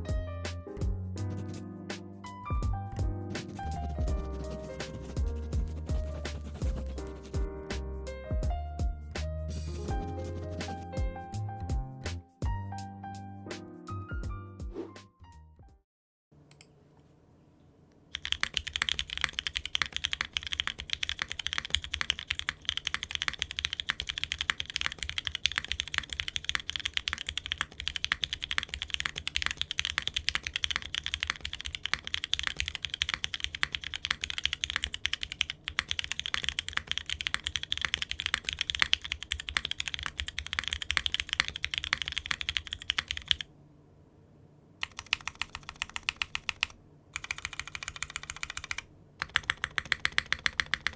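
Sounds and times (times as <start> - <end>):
typing on mechanical keyboard: 18.1 - 43.5, 44.8 - 50.9.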